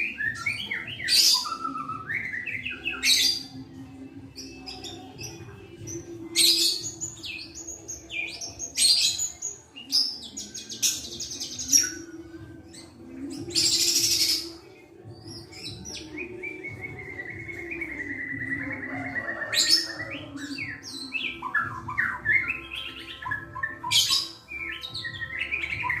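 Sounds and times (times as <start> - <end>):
bird singing whistled phrases: 0.0 - 3.4
bird trill: 0.0 - 3.6, 4.4 - 26.0.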